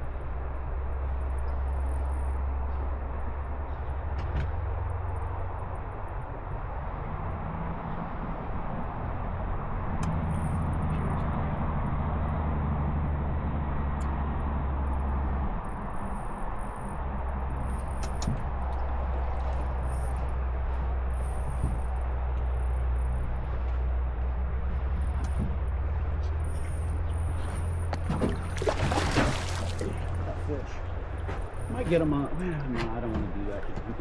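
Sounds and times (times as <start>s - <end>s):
low rumble: 12.8s - 32.7s
flowing river water rushing: 27.9s - 30.6s.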